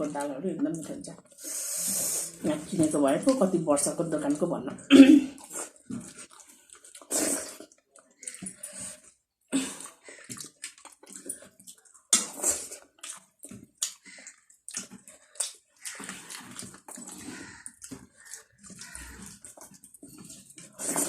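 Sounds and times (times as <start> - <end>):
wet chewing and mouth smacks: 5.3 - 21.0.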